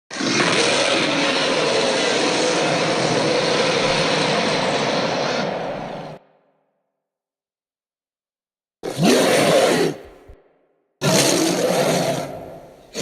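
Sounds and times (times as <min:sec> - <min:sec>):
monster roar: 0:00.1 - 0:06.2, 0:08.8 - 0:10.1, 0:11.0 - 0:13.0.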